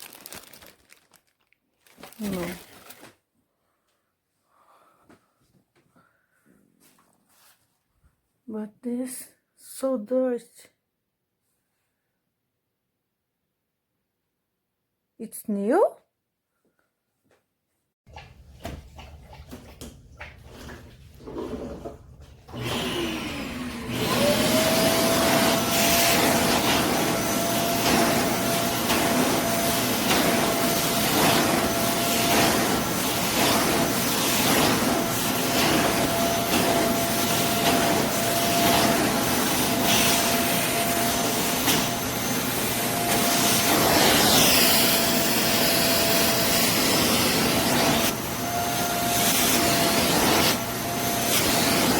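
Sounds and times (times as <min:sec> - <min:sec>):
vacuum cleaner motor whining: 0:21.3 - 0:51.9.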